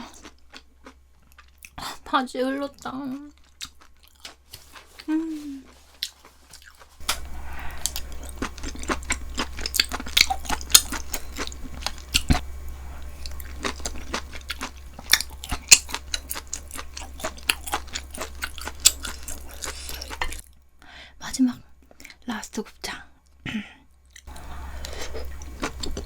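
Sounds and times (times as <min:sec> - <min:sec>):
wet chewing mouth clicks: 0:03.4 - 0:12.4.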